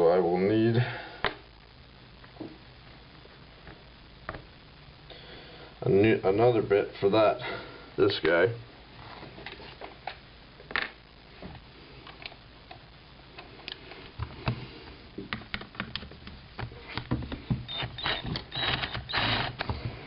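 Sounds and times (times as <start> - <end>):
power drill bursts: 17.7 - 19.8.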